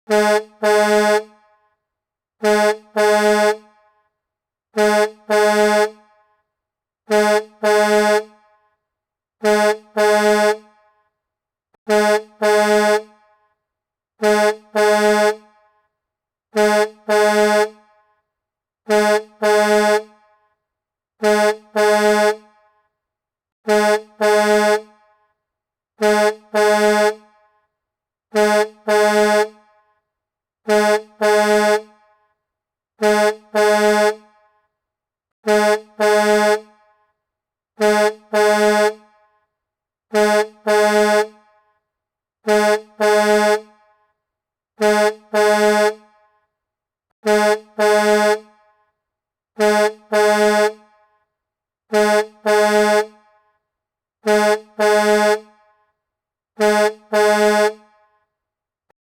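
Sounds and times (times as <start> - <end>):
truck air horn blasts: 0.1 - 1.6, 2.4 - 4.0, 4.8 - 6.2, 7.1 - 8.7, 9.4 - 10.9, 11.8 - 13.4, 14.2 - 15.9, 16.5 - 18.2, 18.9 - 20.4, 21.2 - 22.8, 23.6 - 25.2, 26.0 - 27.6, 28.3 - 29.8, 30.6 - 32.2, 33.0 - 34.4, 35.4 - 37.0, 37.8 - 39.2, 40.1 - 41.5, 42.4 - 43.9, 44.8 - 46.1, 47.2 - 48.6, 49.6 - 50.9, 51.9 - 53.2, 54.2 - 55.6, 56.6 - 58.0.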